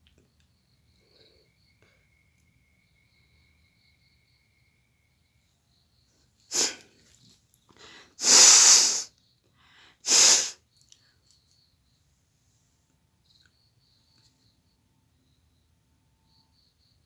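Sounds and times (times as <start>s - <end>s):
woman sneezing: 6.5s - 6.8s, 8.2s - 9.1s, 10.1s - 10.6s
quick breaths in: 6.5s - 6.9s, 7.7s - 10.6s.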